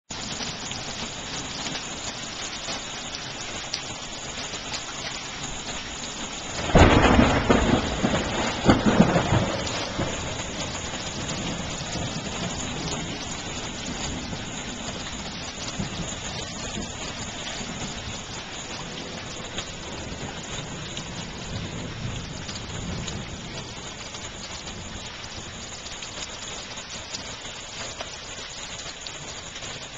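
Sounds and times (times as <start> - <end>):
heavy rain pouring: 0.1 - 29.9
loud thunderclap rumbling: 6.5 - 25.6.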